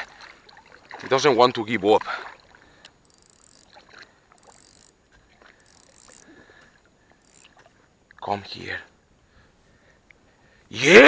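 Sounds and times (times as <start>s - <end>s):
fishing reel cranking: 3.0s - 6.4s, 7.2s - 7.6s.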